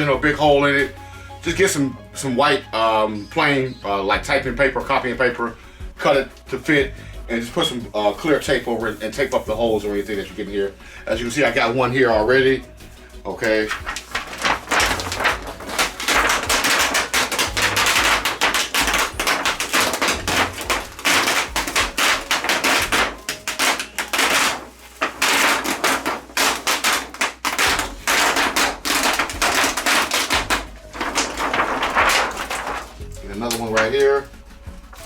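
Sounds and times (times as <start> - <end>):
plastic sheet crackling and rustling: 7.6 - 35.0.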